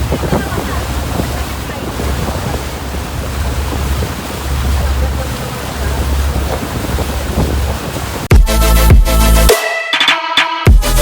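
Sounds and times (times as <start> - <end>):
wind buffeting microphone: 0.0 - 8.3
sea rushing: 0.0 - 9.6.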